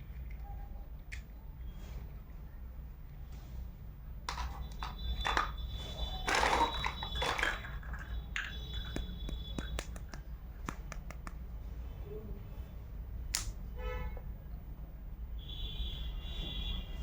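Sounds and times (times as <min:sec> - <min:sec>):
plastic toy pieces clicking: 0:04.3 - 0:05.6, 0:06.2 - 0:11.3.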